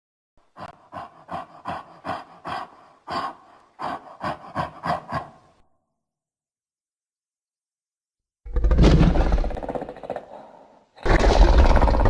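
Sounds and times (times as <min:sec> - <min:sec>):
creature huffing breaths: 0:00.4 - 0:05.8.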